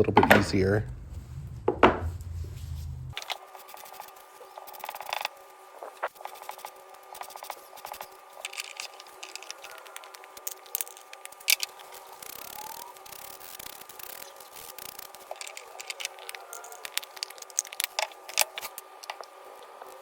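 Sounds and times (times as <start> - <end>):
scratching and scraping on wood: 1.9 - 19.8
small clicks: 7.2 - 20.0.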